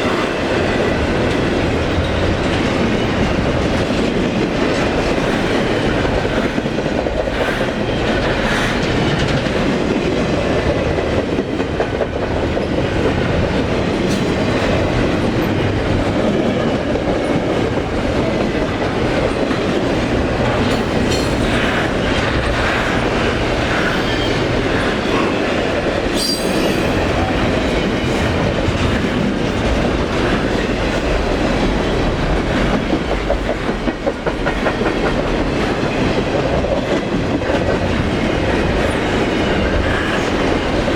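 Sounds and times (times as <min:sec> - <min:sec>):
train wheels clicking over rails: 0:00.0 - 0:40.9
high wheel squeal: 0:23.7 - 0:25.0, 0:26.2 - 0:27.1.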